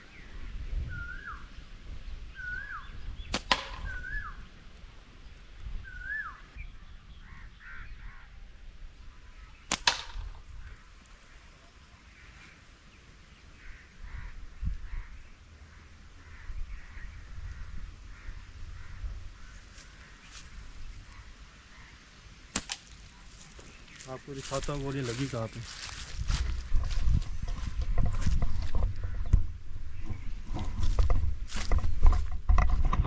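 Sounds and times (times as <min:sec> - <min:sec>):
bird calling: 0:00.0 - 0:01.6, 0:02.3 - 0:04.5, 0:05.8 - 0:08.4
slingshot shot crack: 0:03.3 - 0:04.2, 0:09.7 - 0:10.4, 0:22.5 - 0:23.0.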